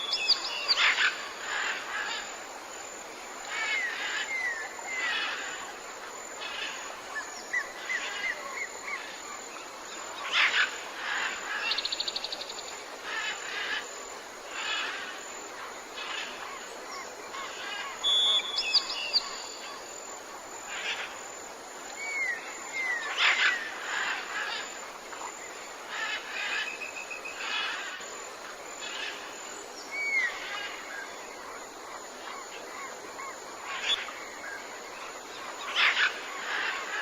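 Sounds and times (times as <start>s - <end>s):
insects hissing: 0.0s - 37.0s
birds calling and whistling: 17.4s - 19.6s.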